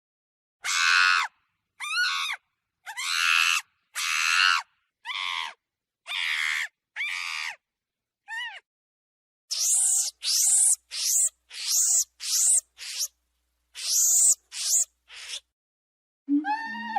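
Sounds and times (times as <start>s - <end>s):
monkey screaming calls: 0.6s - 7.6s, 9.5s - 13.2s, 13.8s - 15.5s.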